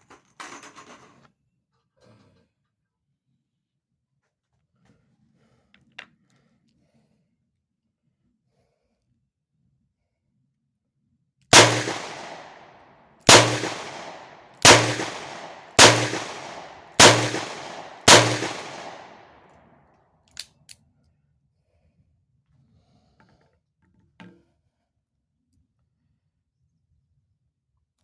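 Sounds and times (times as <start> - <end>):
revolver shots ringing: 11.6 - 12.6, 13.3 - 19.2.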